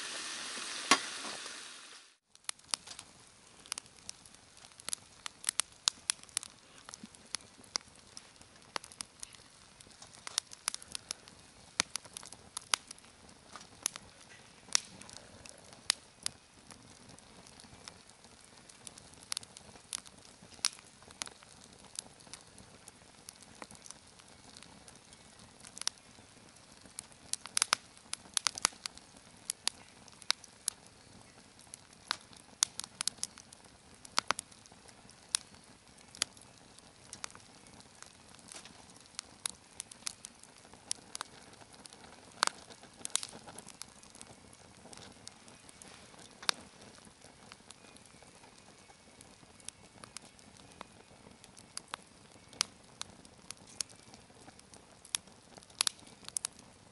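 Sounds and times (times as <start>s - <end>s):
faint steady hiss: 0.0s - 56.9s
wood fire crackling: 0.0s - 56.9s.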